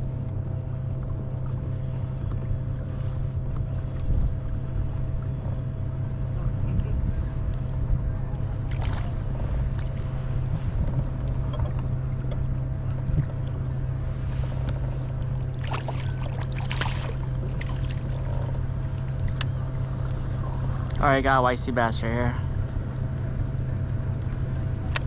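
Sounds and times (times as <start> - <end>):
steady low hum: 0.0 - 25.0
water splashing around kayak: 8.5 - 21.0.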